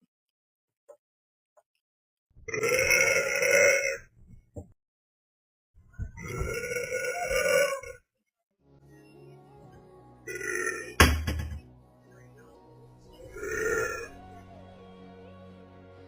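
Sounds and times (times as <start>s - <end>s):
faint background music: 8.4s - 16.0s.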